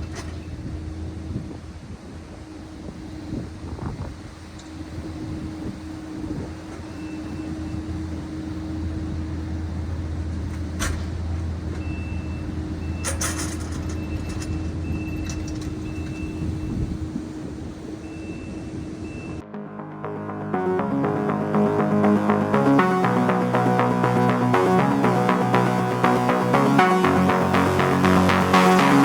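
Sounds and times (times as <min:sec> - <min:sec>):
heavy machinery engine running: 0:00.0 - 0:29.0.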